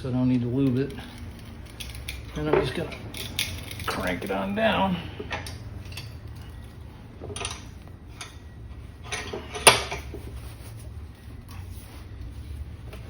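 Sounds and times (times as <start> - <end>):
bench vise metallic clanks: 9.0 - 10.1.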